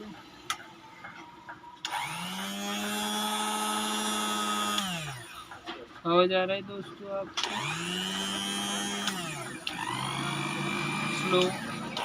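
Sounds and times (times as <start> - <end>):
blender motor humming: 1.8 - 5.6, 7.4 - 12.0.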